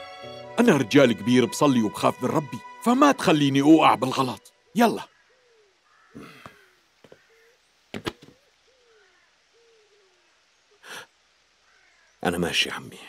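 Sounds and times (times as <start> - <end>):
bird hooting: 4.7 - 7.6, 8.2 - 11.0.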